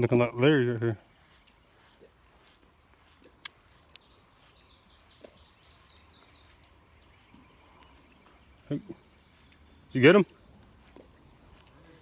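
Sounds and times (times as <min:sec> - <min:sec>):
faint outdoor background noise: 0:00.0 - 0:12.0
sharp click: 0:03.4 - 0:04.0.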